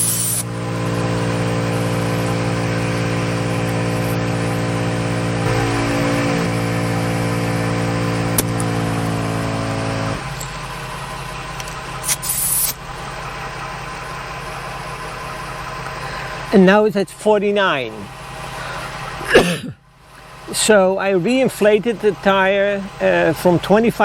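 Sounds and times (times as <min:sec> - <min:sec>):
hiss of air: 0:00.0 - 0:00.5, 0:12.0 - 0:12.8
air compressor running: 0:00.0 - 0:16.6, 0:18.1 - 0:20.6
engine idling: 0:00.0 - 0:24.0.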